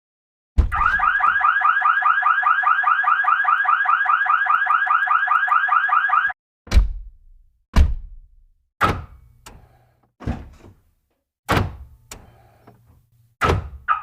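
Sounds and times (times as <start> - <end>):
car alarm siren warbling: 0.7 - 6.4
thump: 6.7 - 7.2, 7.8 - 8.2.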